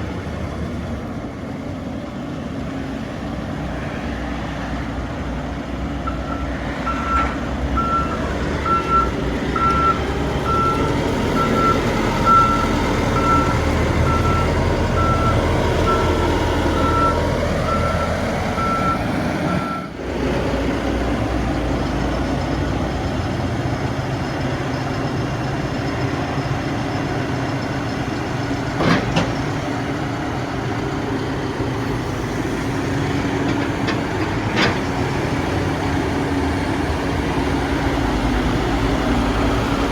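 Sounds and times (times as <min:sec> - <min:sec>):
diesel engine running: 0:00.0 - 0:39.9
reversing alarm beeping: 0:06.1 - 0:20.0.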